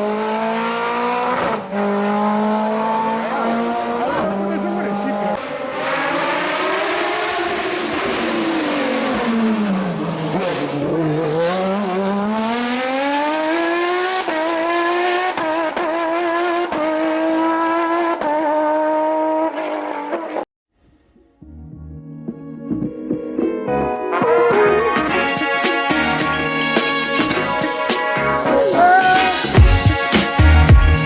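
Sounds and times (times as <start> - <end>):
racing car engine revving: 0.0 - 20.4.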